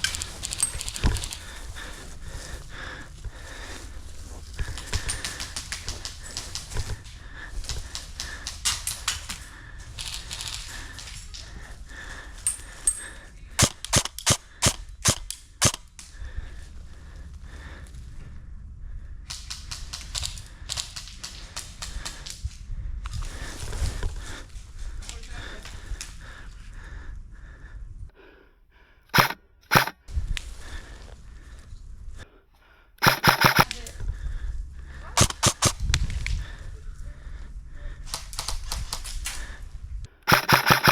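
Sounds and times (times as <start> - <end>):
airsoft gun shots: 13.6 - 15.8, 29.1 - 29.9, 33.0 - 33.7, 35.2 - 35.8, 40.2 - 40.9.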